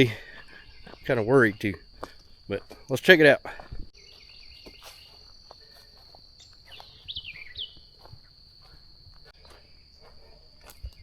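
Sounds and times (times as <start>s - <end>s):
bird chirping: 0.0s - 3.0s, 4.0s - 8.4s
high insect trill: 0.0s - 11.0s
light footsteps on trail: 0.0s - 11.0s.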